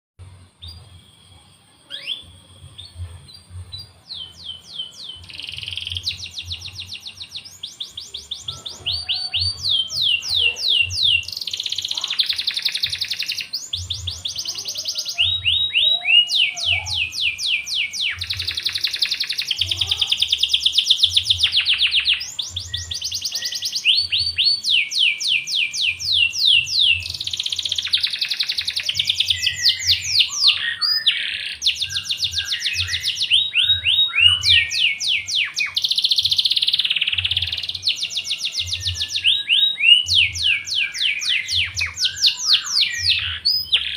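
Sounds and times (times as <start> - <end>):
canary singing trills: 0.2 - 43.9.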